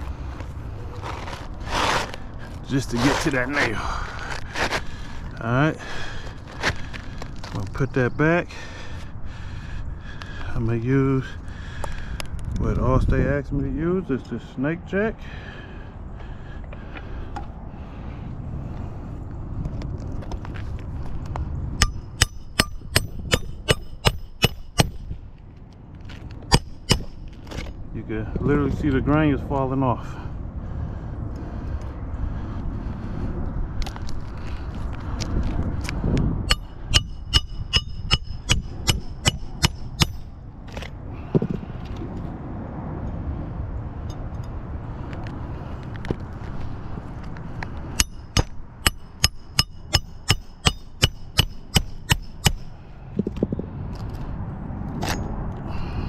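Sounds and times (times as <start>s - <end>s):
hammer blows on metal tool: 21.8s - 25.1s, 36.5s - 40.3s, 48.0s - 52.7s.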